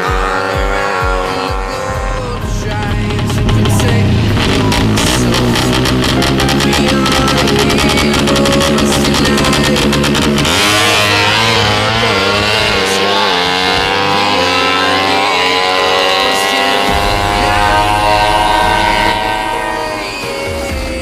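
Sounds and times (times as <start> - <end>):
music with a steady beat: 0.0 - 10.7, 16.9 - 21.0
motorcycle engine revving: 0.0 - 20.8.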